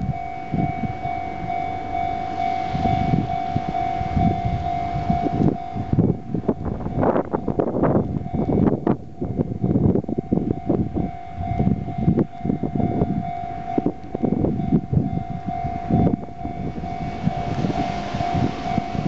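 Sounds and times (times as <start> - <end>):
approaching train rush: 0.0 - 19.0
level-crossing alarm ringing: 0.0 - 19.0
low rumbling: 0.0 - 19.0.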